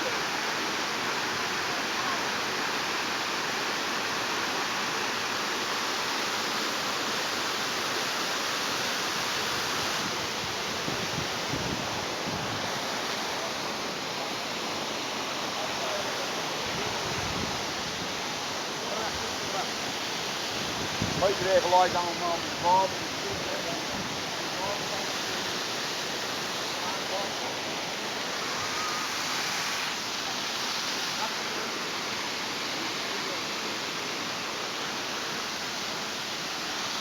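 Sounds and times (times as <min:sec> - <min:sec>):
waterfall rushing: 0:00.0 - 0:37.0.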